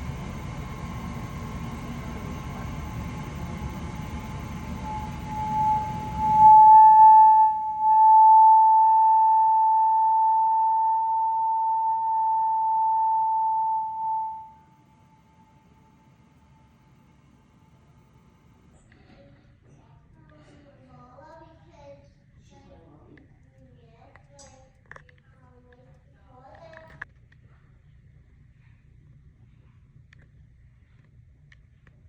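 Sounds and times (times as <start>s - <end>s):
furnace rumbling: 0.0s - 14.5s
high-pitched whine: 0.0s - 16.8s.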